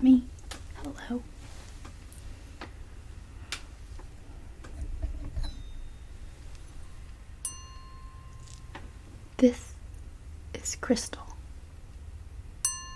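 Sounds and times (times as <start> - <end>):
glass ringing: 5.3 - 9.0, 12.6 - 12.9
taps on crystal glass: 7.4 - 8.9, 12.7 - 12.9.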